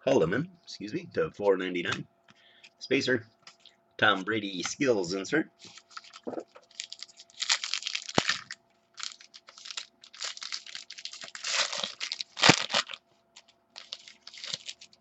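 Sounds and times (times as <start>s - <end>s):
wrappers torn and crinkled: 5.7s - 15.0s.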